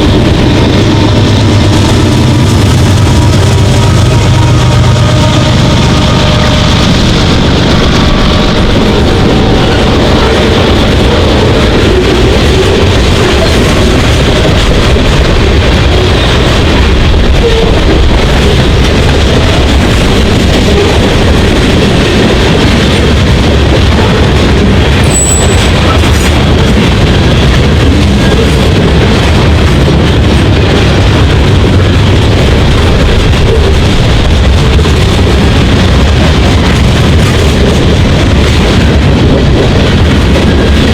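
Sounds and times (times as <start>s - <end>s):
train wheels rumbling on rails: 0.0s - 40.9s
high squeal: 25.0s - 26.0s.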